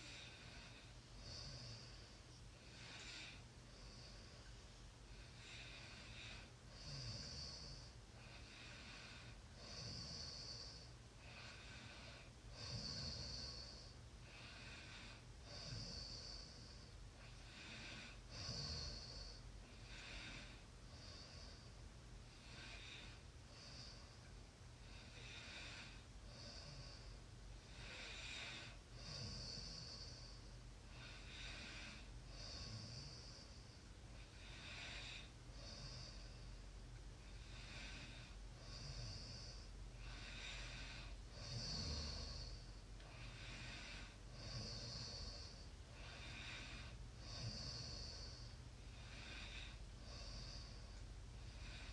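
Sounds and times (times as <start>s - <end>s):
person snoring: 5.3s - 16.9s, 17.5s - 21.6s, 27.7s - 33.6s, 37.4s - 51.0s.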